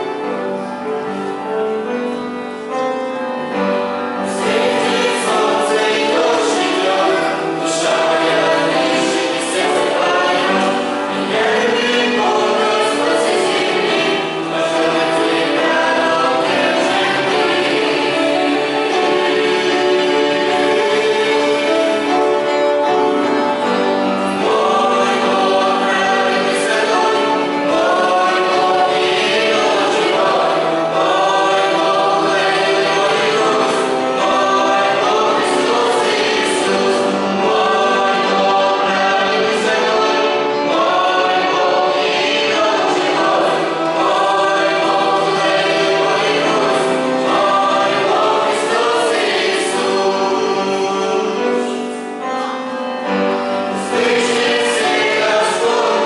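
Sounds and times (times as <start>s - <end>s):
youth choir singing: 4.2s - 52.1s, 53.2s - 56.0s.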